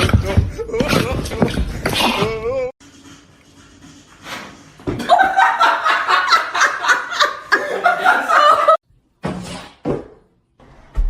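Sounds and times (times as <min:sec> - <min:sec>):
person laughing high-pitched: 0:05.0 - 0:08.8.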